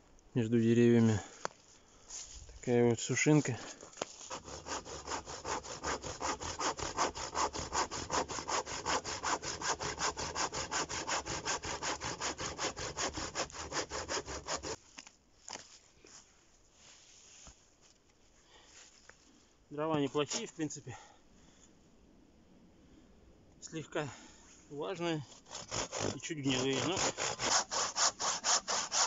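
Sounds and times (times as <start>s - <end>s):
hand saw cutting dry wood: 3.3s - 14.8s, 20.0s - 20.6s, 24.9s - 29.0s.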